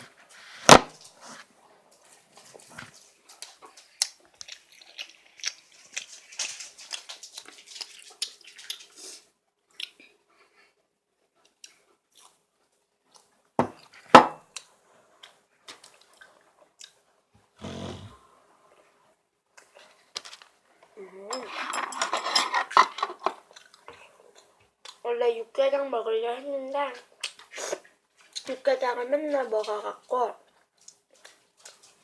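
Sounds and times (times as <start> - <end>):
wet chewing clicks: 3.3 - 10.1, 13.1 - 17.0, 23.4 - 25.0, 27.0 - 28.5, 30.5 - 32.0.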